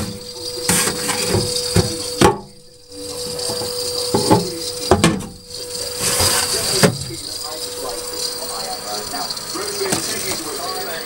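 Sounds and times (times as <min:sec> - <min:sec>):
containers knocking and clattering: 0:00.0 - 0:11.0
steady hum: 0:00.0 - 0:11.0.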